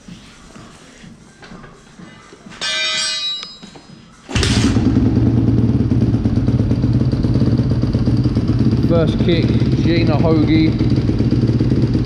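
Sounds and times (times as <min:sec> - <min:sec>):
motorcycle engine starting and idling: 0:04.3 - 0:12.0.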